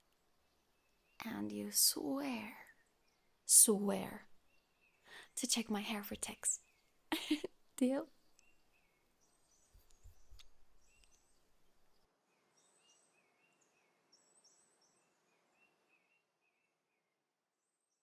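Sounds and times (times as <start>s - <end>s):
small birds chirping: 0.0s - 18.0s.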